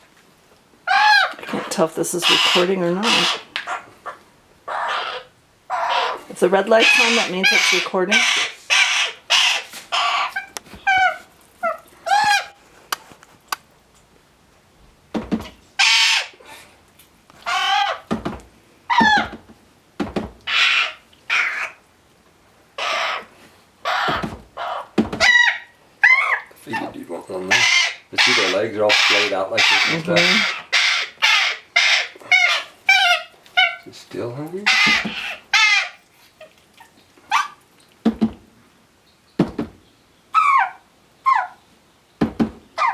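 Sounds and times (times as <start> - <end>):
owl chicks hissing calls: 2.2 - 12.6, 15.8 - 16.8, 20.5 - 21.8, 22.8 - 26.5, 27.5 - 33.8, 34.7 - 36.4
sharp knocks: 15.1 - 15.6, 18.1 - 20.5, 24.1 - 25.3, 38.0 - 38.5, 39.4 - 39.8, 42.2 - 42.6.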